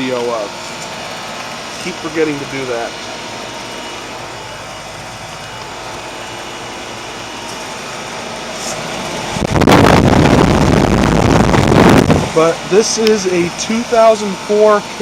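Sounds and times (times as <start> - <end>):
heat pump compressor and fan humming: 0.0 - 15.0
loud rushing noise: 8.4 - 14.1.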